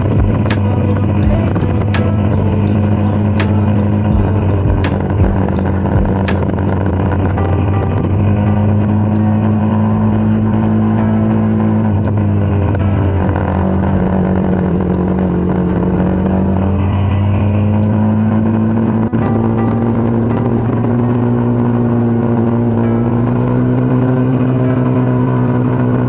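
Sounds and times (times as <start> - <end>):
motorcycle engine running: 0.0 - 26.0.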